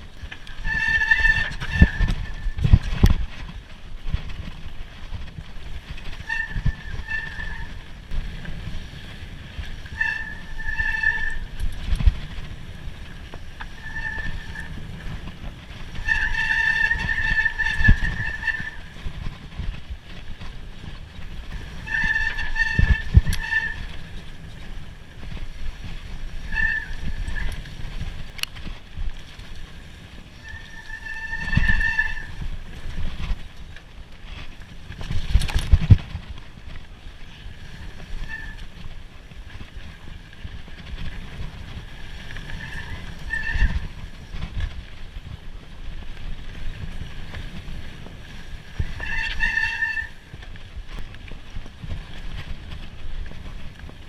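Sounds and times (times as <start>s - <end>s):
rough trail rumble: 0.0s - 54.0s
wind: 0.0s - 54.0s
bike disc brakes squealing: 0.5s - 3.4s, 6.0s - 8.1s, 9.8s - 12.4s, 13.4s - 19.3s, 21.6s - 24.4s, 25.9s - 27.8s, 30.3s - 32.4s, 37.4s - 38.9s, 42.2s - 44.0s, 48.6s - 50.3s.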